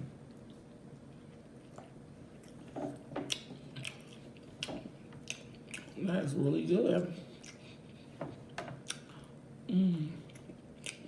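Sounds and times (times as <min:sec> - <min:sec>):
wet chewing mouth clicks: 0:08.8 - 0:09.3.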